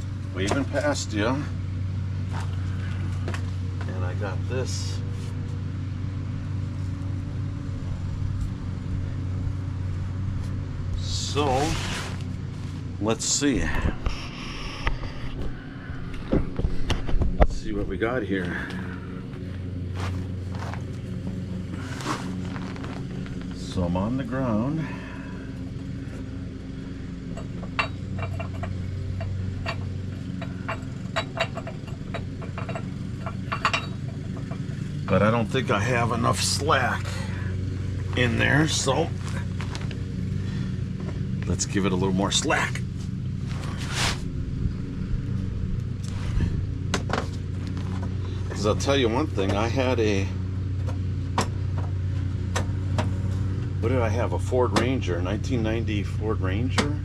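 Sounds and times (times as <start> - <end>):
low hum: 0.0 - 57.0
road traffic rumble: 0.0 - 57.0
metallic clinks: 27.3 - 34.8.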